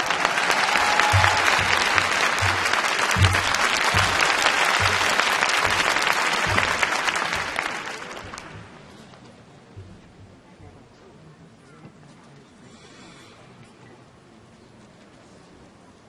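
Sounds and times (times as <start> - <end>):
arena crowd applauding: 0.0 - 9.1
low pulsing beat: 0.8 - 8.9, 9.7 - 10.8.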